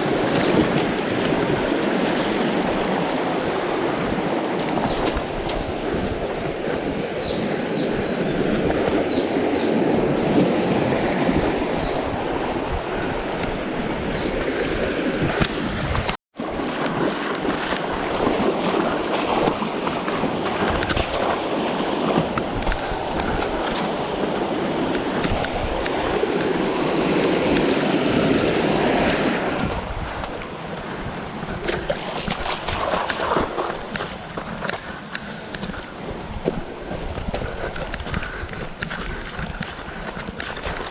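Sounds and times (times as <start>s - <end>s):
water splashing: 0.0s - 6.9s, 16.0s - 40.9s
stream water rushing: 0.0s - 40.9s.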